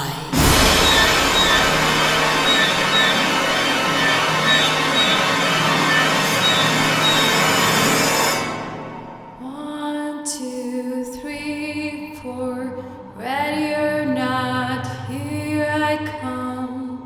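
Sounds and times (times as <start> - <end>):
loud hiss: 0.3 - 9.4.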